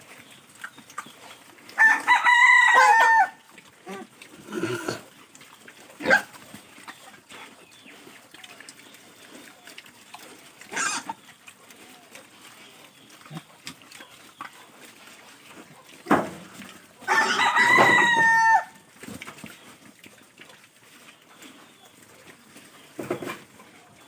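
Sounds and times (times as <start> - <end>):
rooster crowing: 1.8 - 3.4, 17.1 - 18.8.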